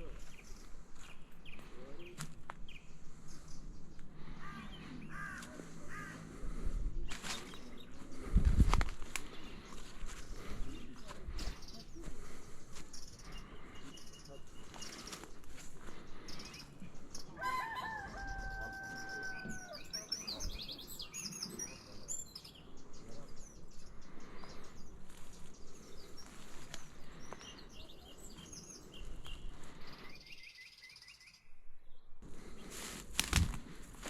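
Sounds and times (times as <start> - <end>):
small birds chirping: 0.0 - 34.0
rooster crowing: 17.4 - 19.9.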